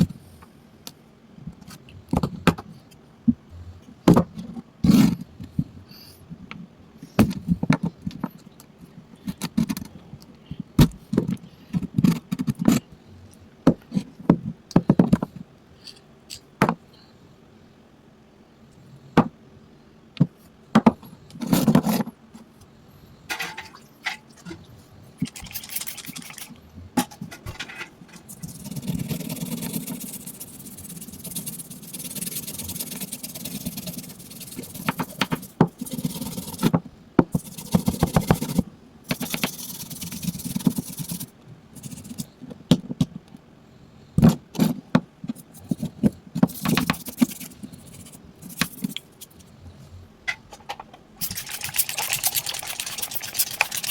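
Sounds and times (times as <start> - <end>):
scraping on a hard object: 27.0 - 36.7, 51.2 - 53.9.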